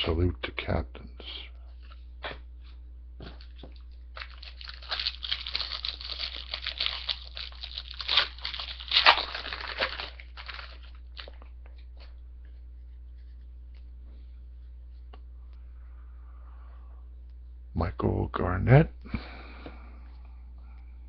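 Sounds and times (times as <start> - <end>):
foil wrapper crackling: 3.4 - 11.5.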